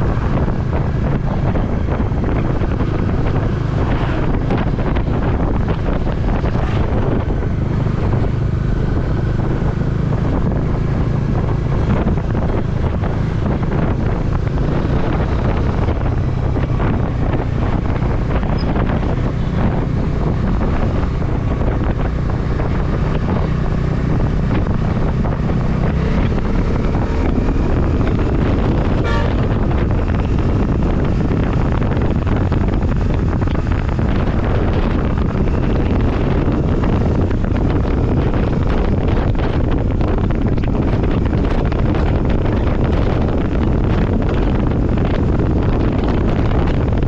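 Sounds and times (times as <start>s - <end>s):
vehicle engine and road noise: 0.0s - 47.0s
wind buffeting microphone: 0.0s - 47.0s.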